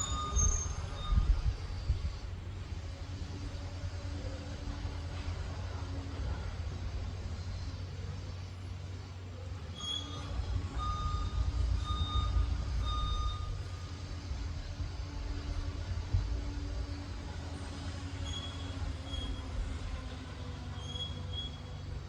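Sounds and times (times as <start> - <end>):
reversing alarm beeps: 0.0 - 2.0, 9.7 - 14.3
diesel engine rumbling: 0.0 - 22.0.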